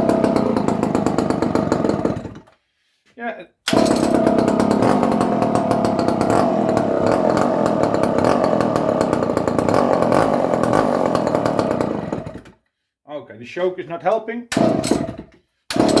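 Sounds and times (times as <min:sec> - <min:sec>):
chainsaw engine running: 0:00.0 - 0:02.4, 0:03.7 - 0:12.6, 0:14.5 - 0:16.0.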